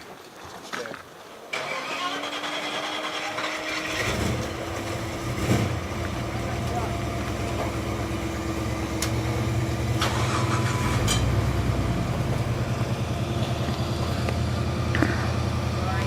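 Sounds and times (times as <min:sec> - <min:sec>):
engine running at low revs: 0:01.5 - 0:16.0.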